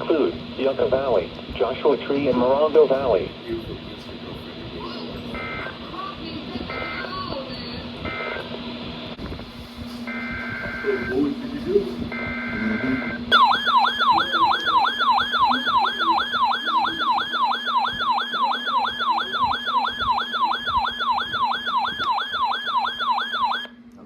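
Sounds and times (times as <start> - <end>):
steady low hum: 0.0 - 24.0
electronic yelp siren: 5.4 - 5.8, 6.7 - 7.1, 8.0 - 8.5, 10.1 - 11.2, 12.1 - 23.8
digital data tones: 12.1 - 23.7.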